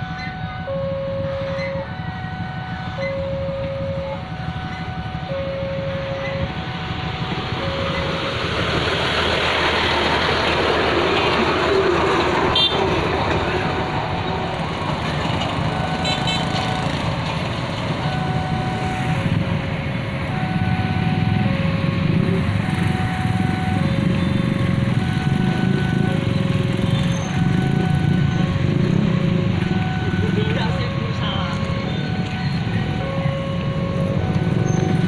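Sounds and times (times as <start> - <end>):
alternating electronic tone: 0.0 - 8.4, 17.9 - 35.0
heavy engine running: 0.0 - 35.0.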